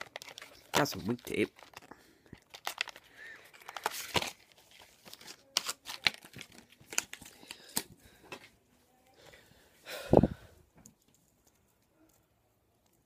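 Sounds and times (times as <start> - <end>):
packaging crinkling and tearing: 0.0 - 8.0.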